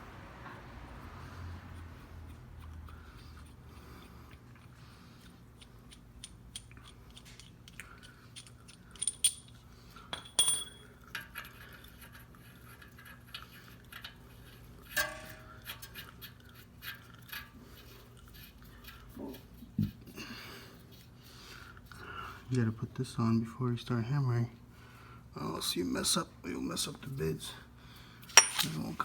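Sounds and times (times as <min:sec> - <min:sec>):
metallic clinks: 0:08.3 - 0:10.9, 0:28.3 - 0:28.9.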